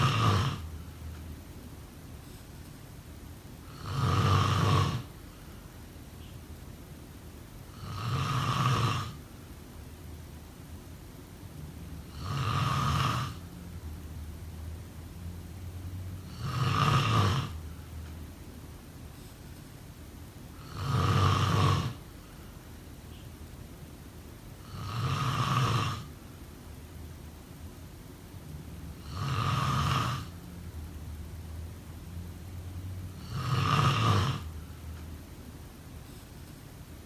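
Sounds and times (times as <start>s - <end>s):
person snoring: 0.0s - 0.7s, 3.6s - 5.2s, 7.7s - 9.2s, 12.0s - 13.5s, 16.2s - 17.6s, 20.6s - 22.0s, 24.6s - 26.1s, 29.0s - 30.4s, 33.1s - 34.6s.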